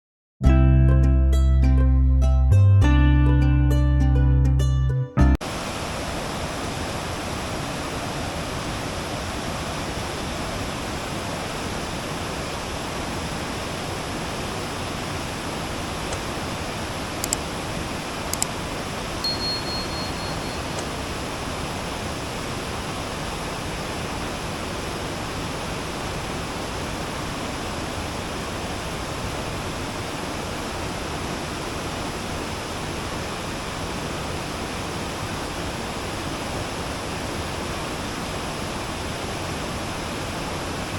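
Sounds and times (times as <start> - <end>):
rushing water: 5.4 - 40.9
sharp clicks: 17.2 - 17.4, 18.3 - 18.5
rapid high-pitched pulsing: 19.2 - 20.8.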